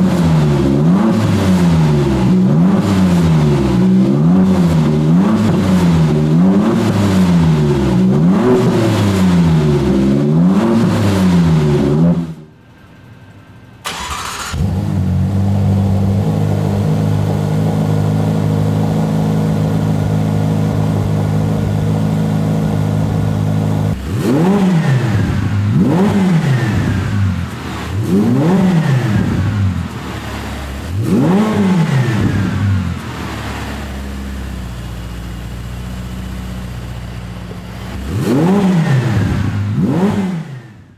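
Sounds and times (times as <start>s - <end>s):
car engine revving: 0.0s - 40.9s
car engine starting and idling: 0.0s - 40.9s.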